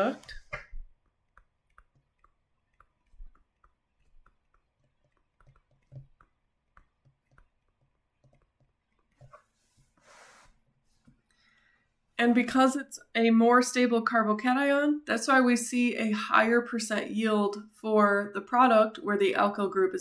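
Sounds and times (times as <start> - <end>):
soft breath: 9.6 - 10.6, 11.2 - 12.0.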